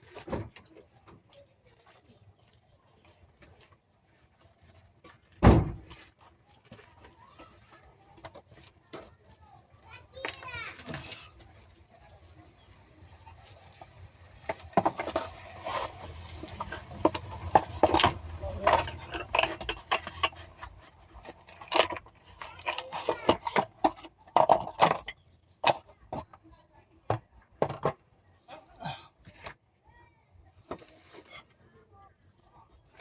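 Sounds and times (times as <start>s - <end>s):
voices: 7.2s - 20.3s
metallic clinks of hand tools: 17.8s - 20.6s.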